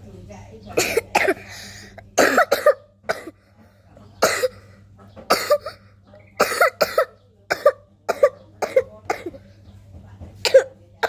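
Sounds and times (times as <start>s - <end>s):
person coughing: 0.8s - 1.4s, 2.2s - 3.4s, 4.2s - 4.6s, 5.3s - 5.8s.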